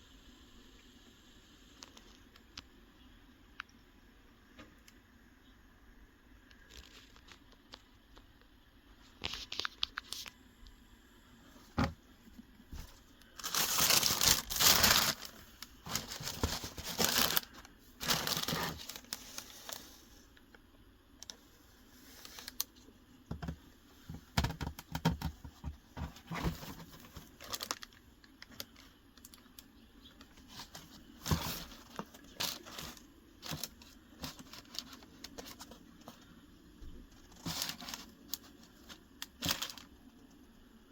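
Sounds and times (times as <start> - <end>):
paper crinkling and tearing: 12.7 - 19.8, 26.0 - 29.4, 30.3 - 36.3, 37.1 - 39.9.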